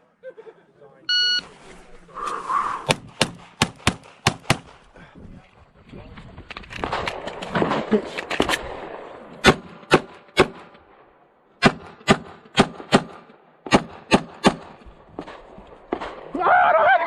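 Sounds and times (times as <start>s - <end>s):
pistol shots: 2.9s - 4.8s, 6.8s - 10.9s, 11.6s - 16.4s.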